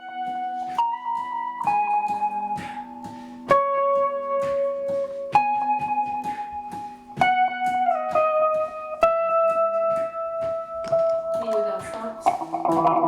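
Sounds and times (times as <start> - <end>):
held lead notes: 0.0 - 13.0
steady drum beat: 10.1 - 13.0.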